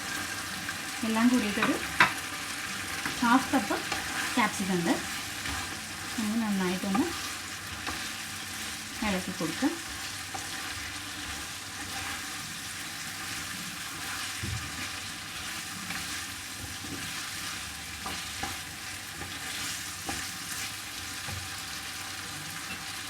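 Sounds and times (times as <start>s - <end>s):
food sizzling in a pan: 0.0s - 23.0s
spoon knocking against pan: 1.6s - 2.2s.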